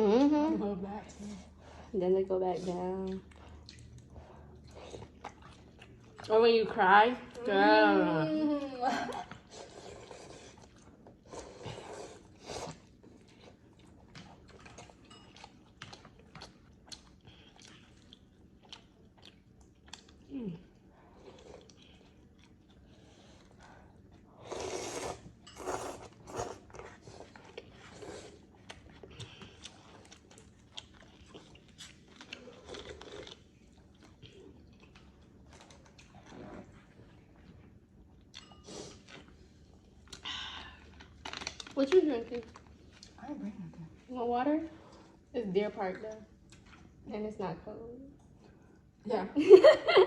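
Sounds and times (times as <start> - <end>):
person chewing food: 3.0 - 6.3, 9.1 - 41.8, 42.4 - 43.3, 46.3 - 47.0
food crunching: 9.3 - 20.3, 21.2 - 37.3, 40.8 - 43.2.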